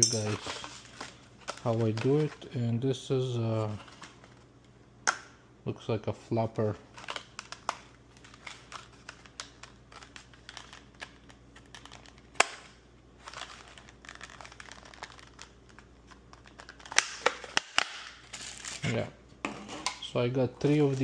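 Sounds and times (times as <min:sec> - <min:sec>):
plastic packaging crinkling: 0:06.8 - 0:18.8.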